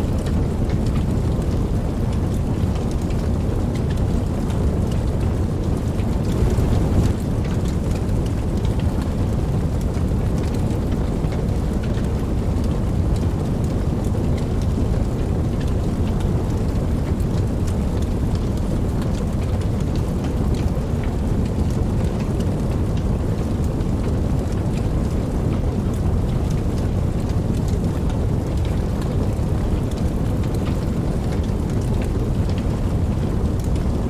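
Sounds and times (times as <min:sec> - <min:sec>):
steady rain falling: 0:00.0 - 0:34.0
deep low rumble: 0:05.5 - 0:07.6.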